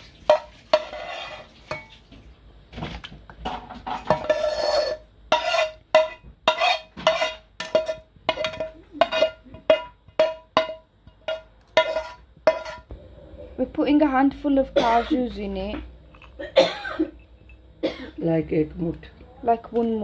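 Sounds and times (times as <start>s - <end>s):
spoon scraping a pot: 0.0s - 1.9s, 3.4s - 12.9s.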